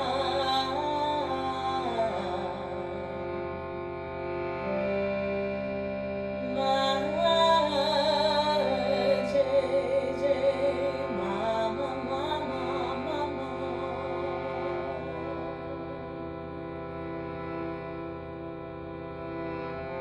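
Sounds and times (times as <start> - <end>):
woman singing: 0.0 - 3.0, 6.5 - 15.4
harmonium drone: 0.0 - 20.0.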